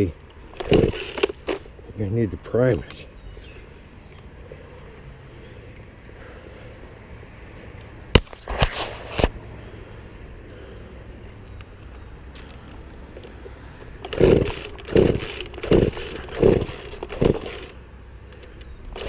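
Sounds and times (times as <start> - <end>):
chainsaw starter cord yanks: 0.0 - 1.7, 13.9 - 19.0
chainsaw engine turning over: 0.5 - 1.7, 13.9 - 19.0.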